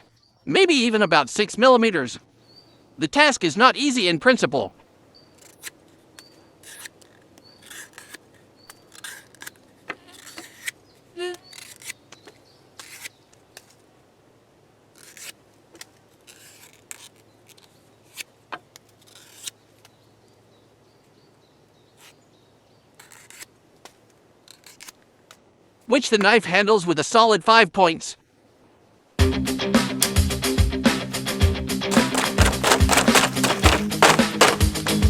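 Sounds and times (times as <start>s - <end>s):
knife cutting leather: 6.6s - 10.8s, 15.0s - 15.4s, 31.9s - 35.0s.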